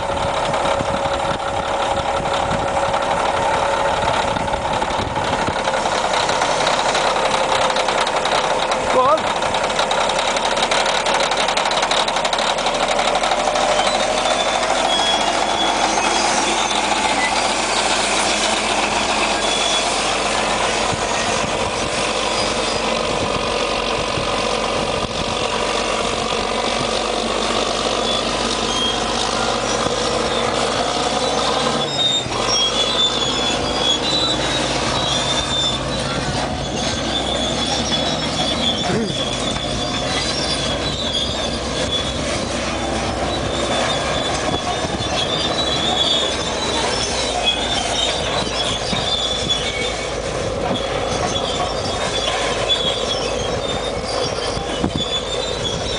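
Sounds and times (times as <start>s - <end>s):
bulldozer running: 0.0s - 55.9s
high-pitched squeals: 9.9s - 55.9s.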